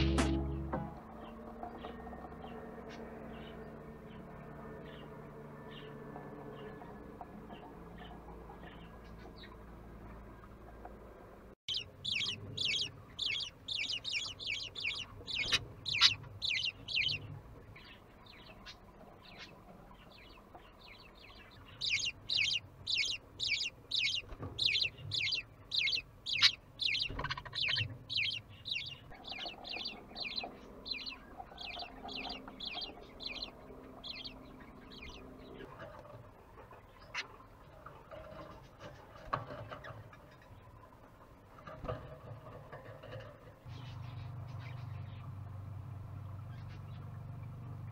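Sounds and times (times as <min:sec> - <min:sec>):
budgerigars cheeping: 0:11.7 - 0:19.6, 0:21.0 - 0:35.7.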